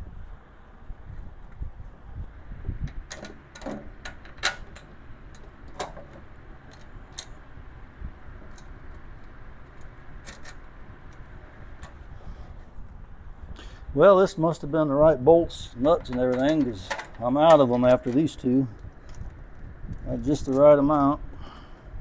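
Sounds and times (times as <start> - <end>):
metal bolts and nuts clinking: 9.8 - 10.7, 15.5 - 19.2.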